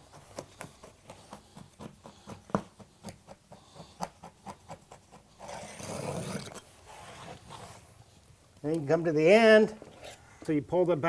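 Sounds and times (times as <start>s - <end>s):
carpet scraping: 0.0s - 8.3s.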